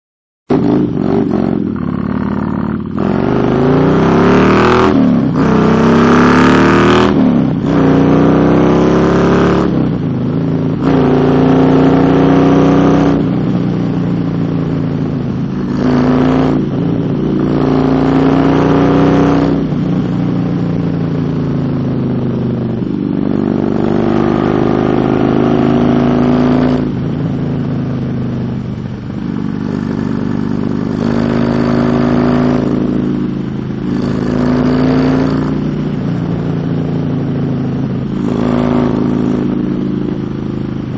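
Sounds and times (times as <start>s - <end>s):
motorcycle engine accelerating: 0.5s - 40.9s.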